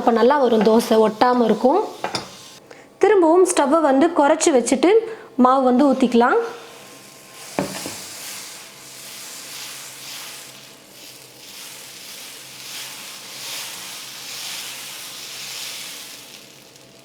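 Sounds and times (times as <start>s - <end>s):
batter sizzling on a griddle: 6.6s - 17.0s.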